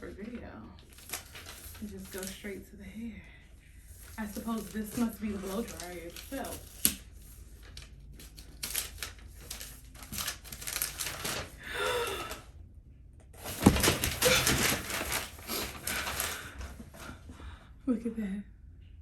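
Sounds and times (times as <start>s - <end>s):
packaging rustling and crackling: 0.1s - 2.5s, 3.9s - 12.4s, 13.4s - 17.1s.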